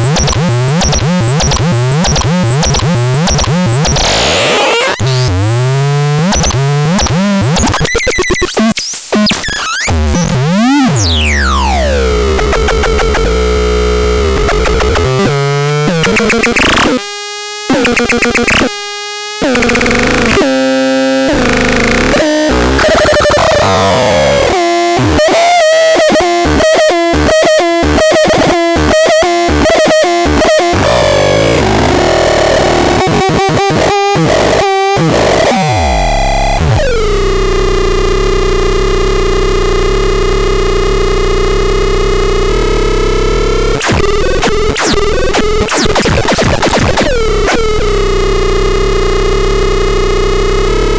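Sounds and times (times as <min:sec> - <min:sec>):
harsh electronic synthesizer tones: 0:00.0 - 0:50.9.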